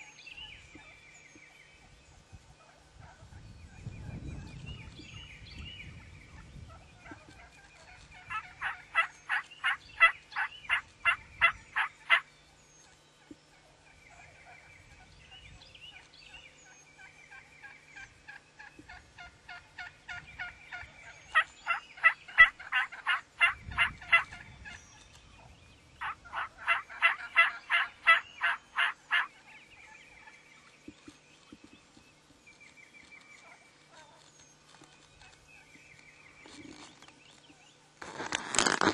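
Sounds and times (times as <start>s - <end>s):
turkey yelping: 8.2s - 12.2s, 18.3s - 24.4s, 26.0s - 29.3s.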